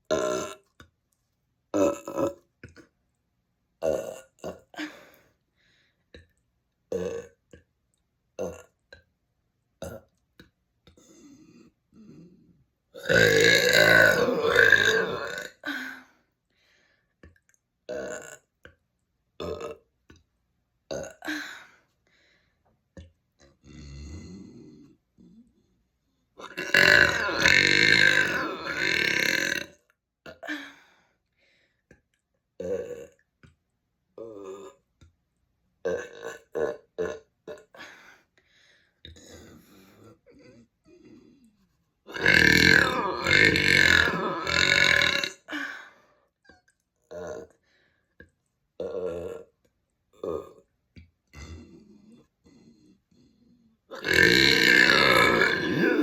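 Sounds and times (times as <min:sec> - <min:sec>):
person burping: 0:00.0 - 0:00.9, 0:01.8 - 0:02.9, 0:03.8 - 0:05.2, 0:06.9 - 0:07.6, 0:08.4 - 0:09.0, 0:09.8 - 0:10.1, 0:11.0 - 0:16.1, 0:17.2 - 0:18.8, 0:19.4 - 0:19.9, 0:20.9 - 0:21.8, 0:23.4 - 0:25.3, 0:26.4 - 0:30.8, 0:32.6 - 0:33.3, 0:34.2 - 0:34.9, 0:35.8 - 0:37.9, 0:42.1 - 0:45.9, 0:46.5 - 0:47.6, 0:48.8 - 0:50.7, 0:51.3 - 0:52.9, 0:53.8 - 0:56.0.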